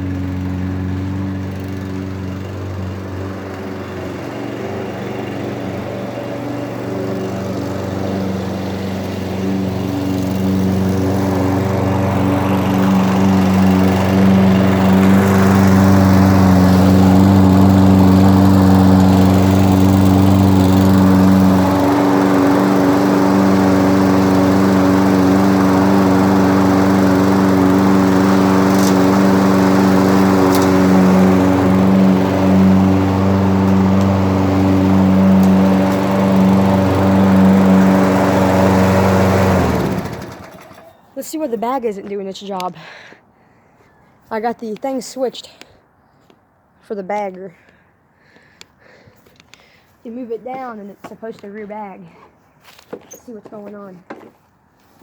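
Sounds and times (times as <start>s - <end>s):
lawn mower engine running: 0.0s - 42.7s.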